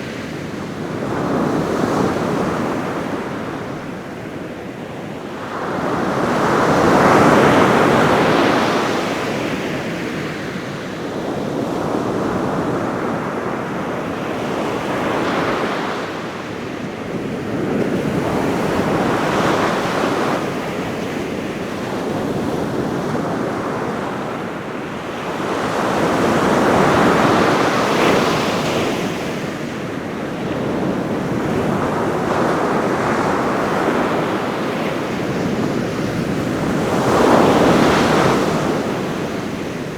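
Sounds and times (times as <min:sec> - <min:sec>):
ocean surf breaking: 0:31.7 - 0:39.9.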